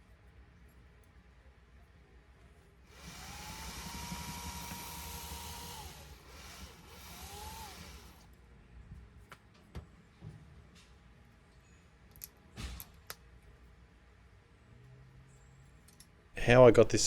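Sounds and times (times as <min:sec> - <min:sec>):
small power tool motor whirring: 0:02.9 - 0:08.2.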